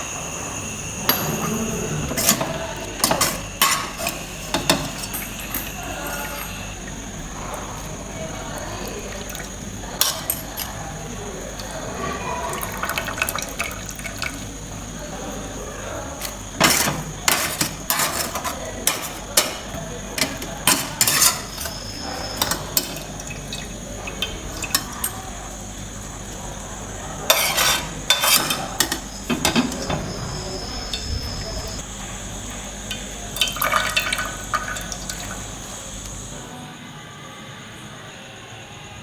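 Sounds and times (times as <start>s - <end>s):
metal spoon scraping a pot: 1.1s - 7.9s, 9.3s - 10.8s, 16.2s - 26.3s, 27.2s - 31.8s.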